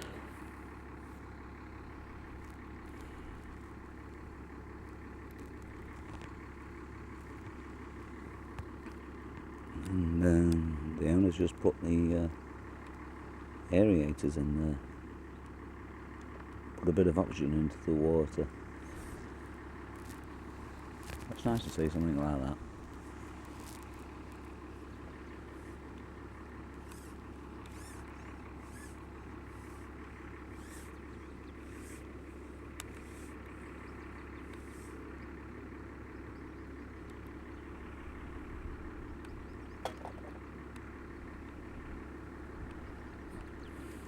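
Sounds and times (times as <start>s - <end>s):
aerator motor humming: 0.0s - 44.0s
light clicks: 32.7s - 35.0s.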